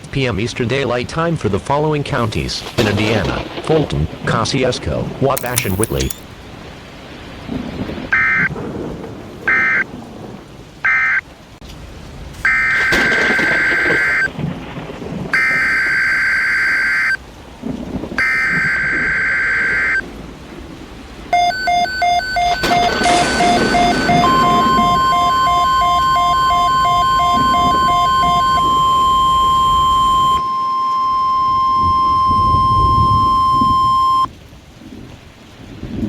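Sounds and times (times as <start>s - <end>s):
rain: 0.0s - 5.4s, 6.2s - 36.0s
rolling thunder: 2.4s - 5.2s, 7.4s - 10.8s, 11.9s - 21.5s, 22.5s - 34.3s
buzzing data bursts: 21.4s - 34.3s
fast string of beeps: 21.4s - 34.3s.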